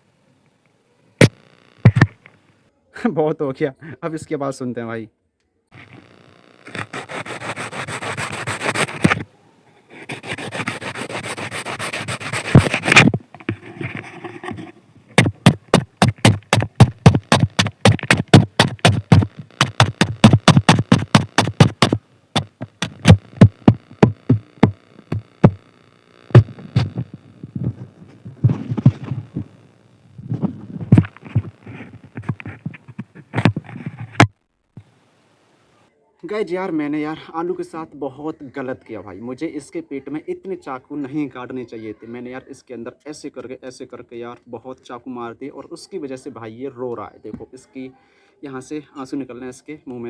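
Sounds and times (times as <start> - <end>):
knife cutting raw potato: 10.0 - 25.6.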